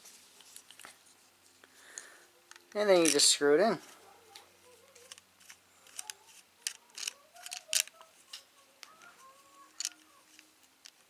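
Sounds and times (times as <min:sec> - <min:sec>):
plastic parts clicking and scraping: 0:02.0 - 0:04.0, 0:04.8 - 0:11.0.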